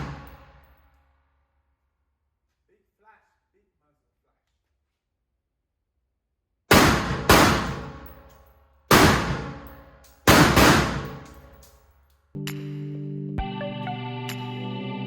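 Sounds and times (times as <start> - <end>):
rifle shots with echo: 0.0 - 0.6, 6.7 - 8.2, 8.9 - 11.4.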